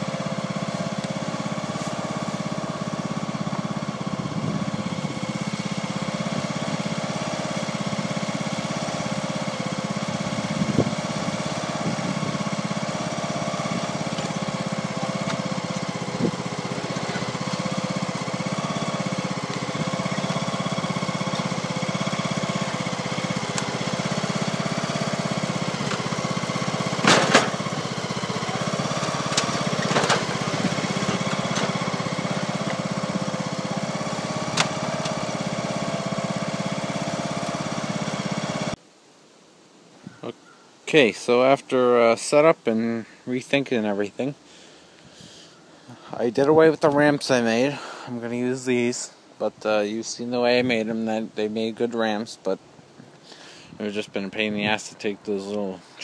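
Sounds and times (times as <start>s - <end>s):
lawn tractor engine idling: 0.0s - 38.8s
sharp knocks: 27.0s - 27.6s.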